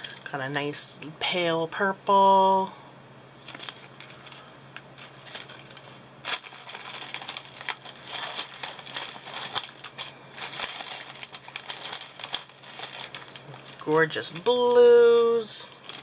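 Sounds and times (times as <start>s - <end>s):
plastic packets crinkling: 3.4s - 14.2s, 15.2s - 16.0s.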